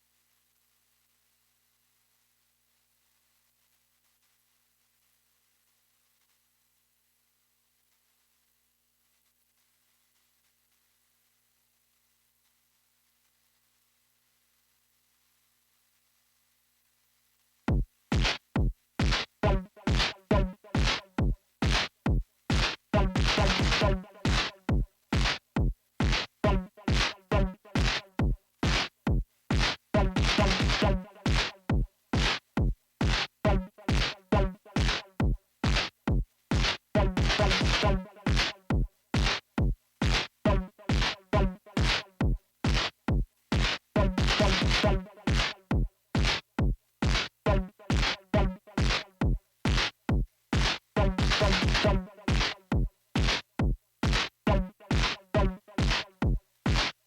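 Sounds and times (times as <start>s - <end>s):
synthesized percussive hits: 30.0s - 31.8s.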